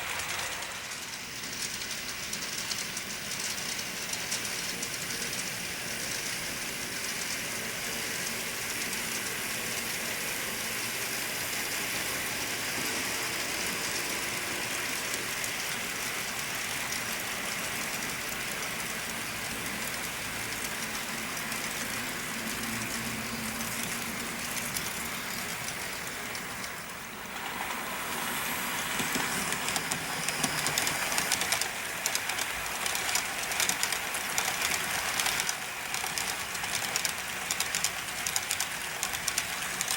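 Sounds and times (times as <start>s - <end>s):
model train running on track: 0.0s - 39.9s
wheels clicking over rail joints: 12.6s - 27.8s, 28.9s - 39.9s.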